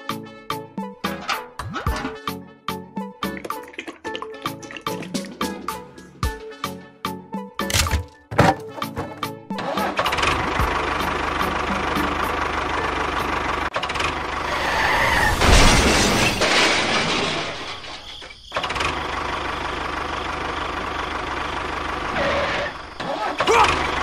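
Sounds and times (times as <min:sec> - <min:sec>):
engine running: 0:08.3 - 0:15.6, 0:18.6 - 0:24.0.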